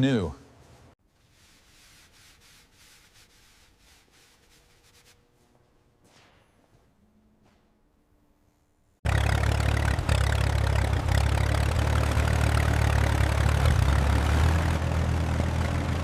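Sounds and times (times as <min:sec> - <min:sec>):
tractor engine idling: 0:09.1 - 0:16.0.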